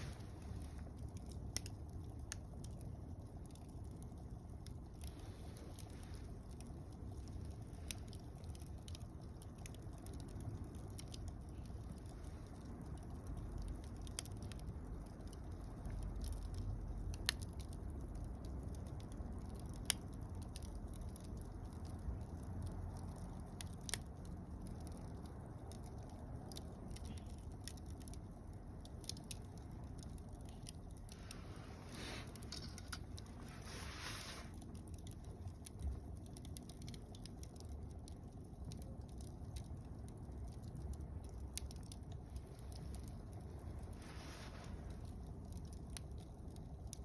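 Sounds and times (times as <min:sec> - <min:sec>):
fire hissing: 0:00.0 - 0:17.8, 0:28.8 - 0:47.0
campfire crackling and popping: 0:00.0 - 0:47.0
low rush of flame: 0:00.0 - 0:47.0.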